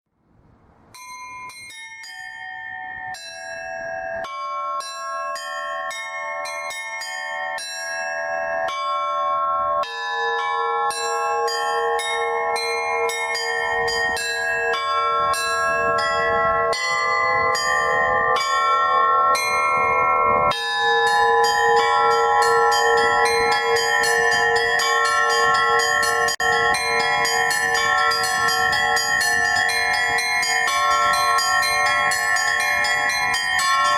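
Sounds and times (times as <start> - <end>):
small church bells ringing: 0.9 - 33.9
large bell striking steadily: 1.0 - 33.9.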